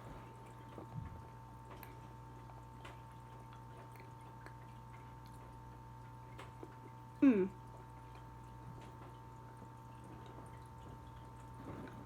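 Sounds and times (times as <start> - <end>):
electrical hum: 0.0 - 12.0
chewing candy: 1.7 - 7.2.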